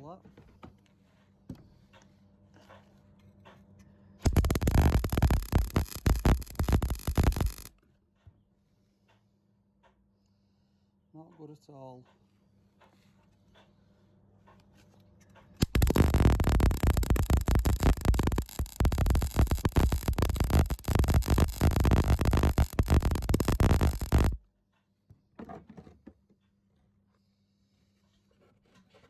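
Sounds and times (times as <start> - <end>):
welder arc crackling: 4.3 - 7.7, 15.6 - 24.4.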